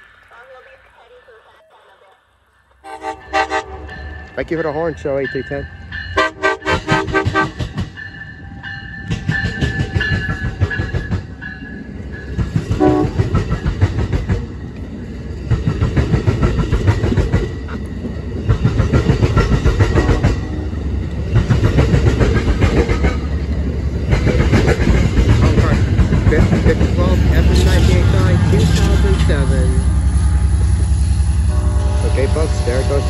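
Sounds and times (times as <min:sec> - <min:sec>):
train rumbling past: 0:00.0 - 0:33.0
locomotive horn blast: 0:02.8 - 0:04.2, 0:06.2 - 0:07.7, 0:12.8 - 0:13.2, 0:27.2 - 0:33.0
wheels clicking over rail joints: 0:09.0 - 0:29.8.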